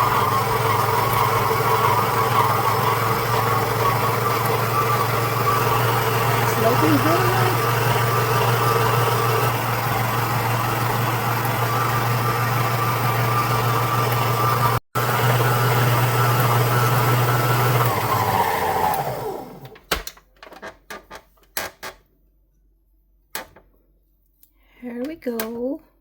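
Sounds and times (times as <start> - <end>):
food processor motor running: 0.0 - 19.8.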